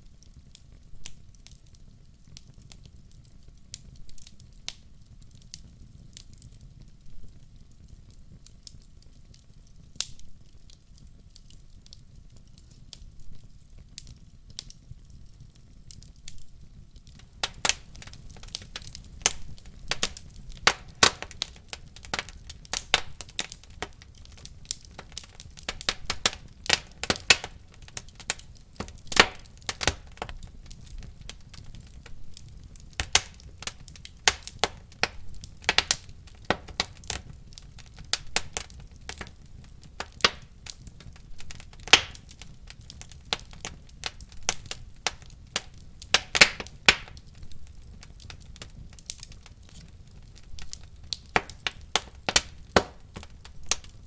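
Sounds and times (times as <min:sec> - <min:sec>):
fire crackling and popping: 0:00.0 - 0:54.0
low rumble of flames: 0:00.0 - 0:54.0.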